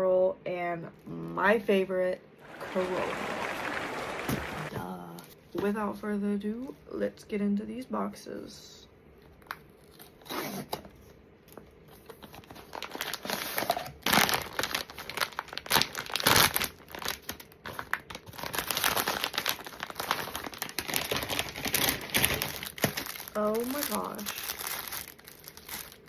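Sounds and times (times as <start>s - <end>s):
packaging crinkling and tearing: 11.5s - 26.0s.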